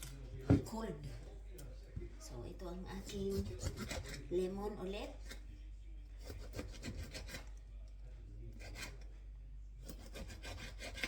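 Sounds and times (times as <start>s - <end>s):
knife sawing through lemon: 3.1s - 4.5s, 6.2s - 7.5s, 8.6s - 9.0s, 9.8s - 11.0s.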